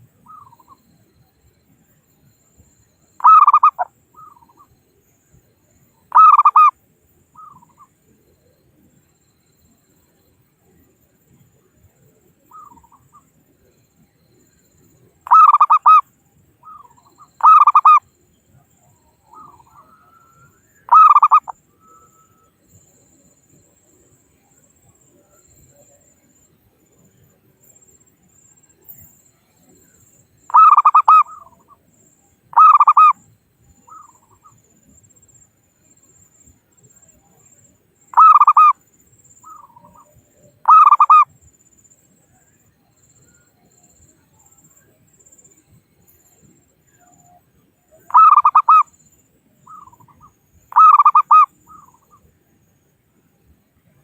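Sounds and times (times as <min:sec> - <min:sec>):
dove cooing: 0:03.2 - 0:04.6, 0:06.1 - 0:06.7, 0:15.3 - 0:16.0, 0:16.6 - 0:18.0, 0:19.3 - 0:22.2, 0:30.5 - 0:31.7, 0:32.6 - 0:33.2, 0:38.2 - 0:38.8, 0:39.4 - 0:41.2, 0:48.0 - 0:48.8, 0:49.7 - 0:52.1.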